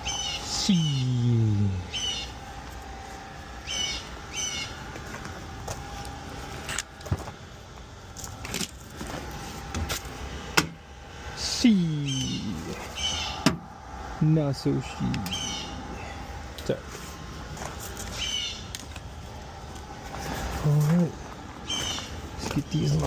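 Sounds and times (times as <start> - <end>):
small bird chirping: 0.0 - 1.3, 1.9 - 2.4, 3.6 - 4.8, 11.9 - 13.4, 15.2 - 16.3, 18.1 - 18.8, 21.6 - 23.0.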